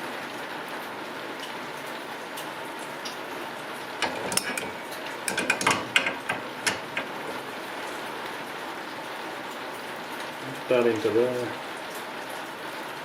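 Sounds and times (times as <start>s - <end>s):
small metal parts clinking: 4.0s - 7.4s.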